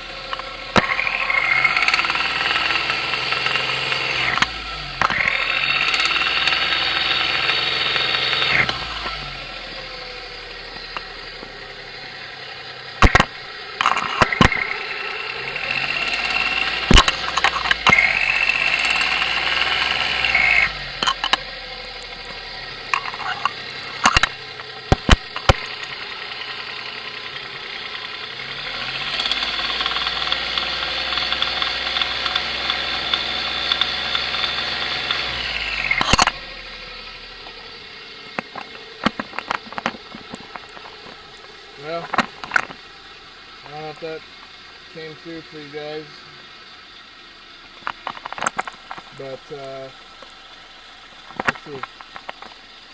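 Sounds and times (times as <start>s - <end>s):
car engine revving: 0.0s - 52.9s
sharp engine knocks: 13.0s - 15.0s, 22.2s - 26.5s.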